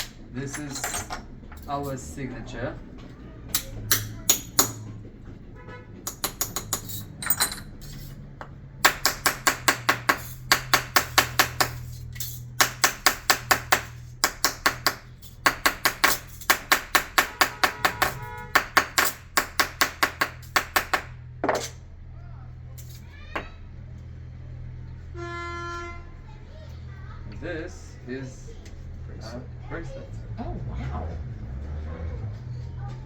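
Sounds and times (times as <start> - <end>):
hammer tapping punch into copper: 3.5 - 4.9, 6.1 - 6.9, 8.8 - 11.8, 12.6 - 21.1.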